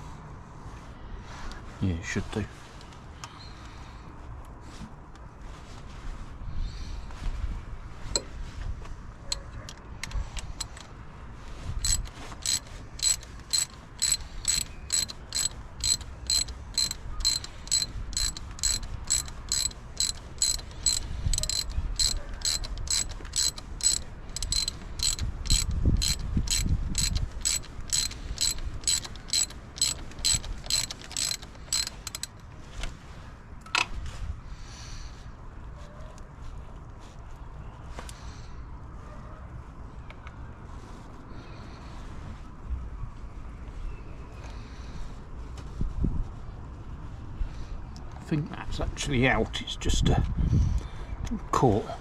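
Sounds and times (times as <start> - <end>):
ratchet wrench clicking: 10.0 - 10.9, 11.8 - 32.4.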